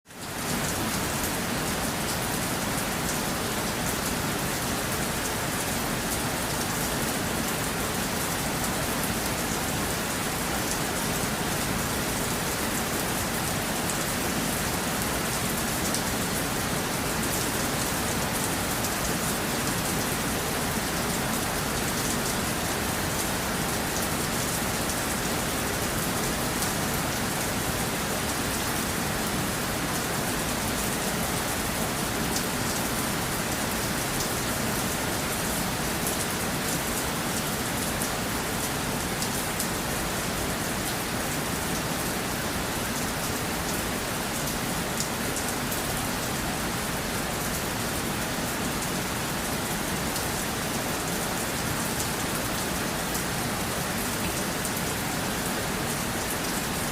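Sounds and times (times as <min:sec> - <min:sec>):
steady rain falling: 0:00.1 - 0:56.9.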